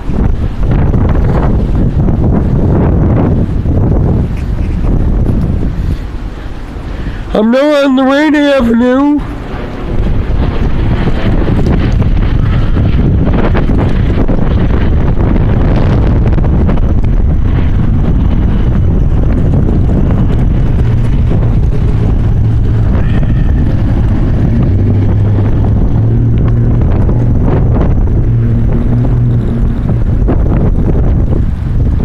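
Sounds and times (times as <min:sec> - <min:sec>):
low steady hum: 0:00.0 - 0:32.0
wind buffeting microphone: 0:00.0 - 0:32.0.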